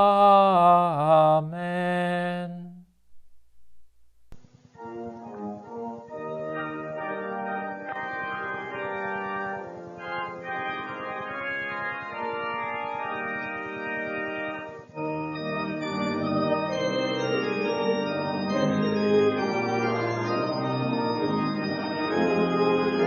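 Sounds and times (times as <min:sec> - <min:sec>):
church organ playing hymn chords: 0:04.7 - 0:23.0.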